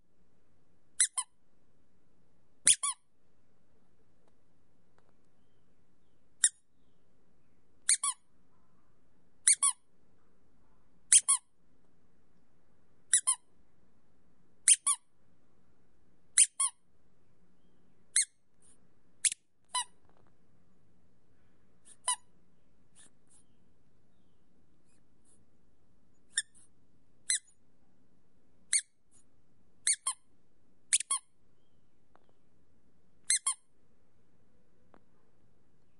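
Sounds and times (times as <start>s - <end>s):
squeak toy squeaking: 1.0s - 1.3s, 2.6s - 3.0s, 6.4s - 6.6s, 7.8s - 8.2s, 9.4s - 9.8s, 11.1s - 11.5s, 13.1s - 13.4s, 14.6s - 15.0s, 16.4s - 16.8s, 18.2s - 18.4s, 19.2s - 20.0s, 21.9s - 22.3s, 26.3s - 26.7s, 27.3s - 27.6s, 28.7s - 29.0s, 29.8s - 30.2s, 30.9s - 31.3s, 33.2s - 33.6s.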